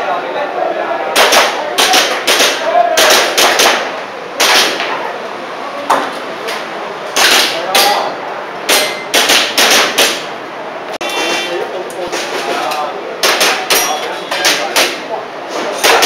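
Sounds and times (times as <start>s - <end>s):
airsoft pistol shots: 1.2s - 4.8s, 7.2s - 8.0s, 8.7s - 10.3s, 13.2s - 13.8s.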